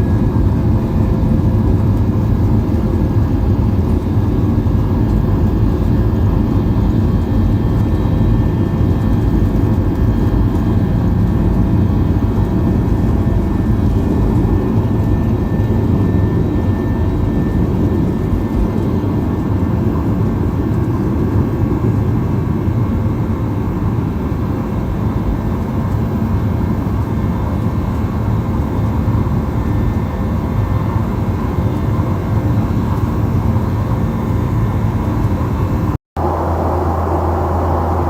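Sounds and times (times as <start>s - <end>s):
jet engine rumble in cabin: 0.0s - 38.0s
faint whine: 36.2s - 38.0s.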